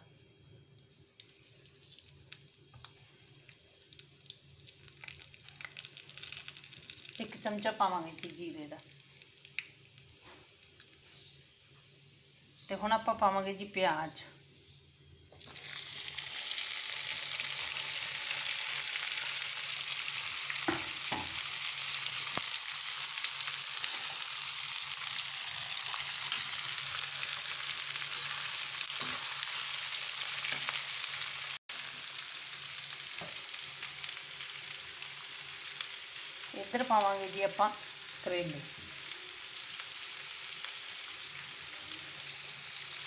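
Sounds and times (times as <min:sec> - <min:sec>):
onions sizzling in oil: 0:00.7 - 0:43.0
spoon clinking against pan: 0:26.2 - 0:26.6, 0:28.1 - 0:28.4.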